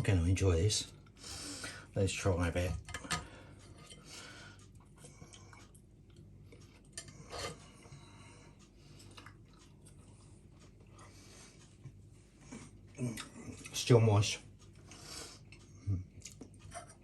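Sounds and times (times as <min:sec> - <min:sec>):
person chewing food: 0:03.5 - 0:13.8, 0:14.6 - 0:17.0.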